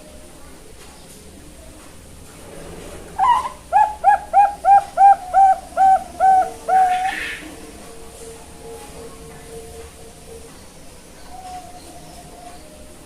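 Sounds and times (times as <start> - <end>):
dove cooing: 3.1 - 13.0.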